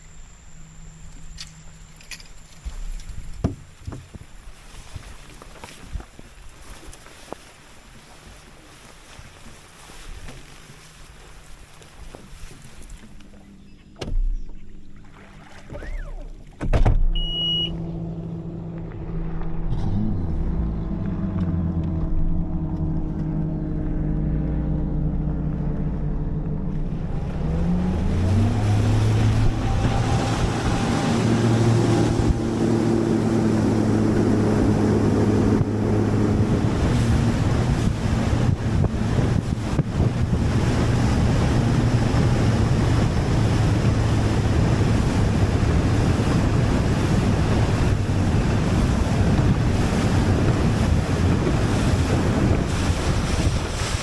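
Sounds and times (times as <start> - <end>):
outboard motor running: 0.0 - 54.0
wind and water rushing: 0.0 - 54.0
short beep: 17.1 - 17.9.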